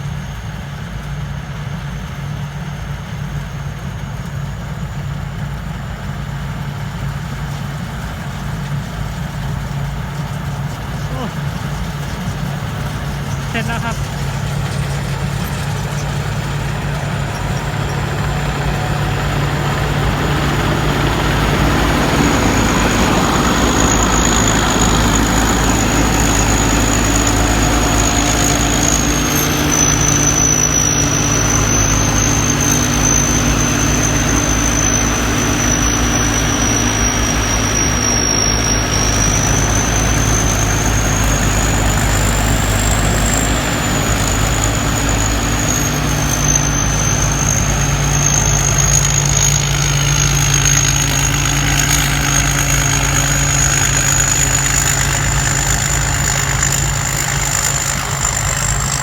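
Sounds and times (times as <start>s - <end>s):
diesel engine running hard: 0.0s - 59.0s
turbo whistle: 13.1s - 59.0s.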